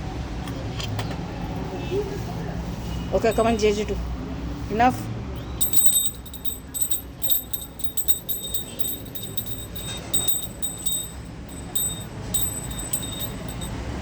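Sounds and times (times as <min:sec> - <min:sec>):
small metal pieces jingling: 0:05.6 - 0:13.7.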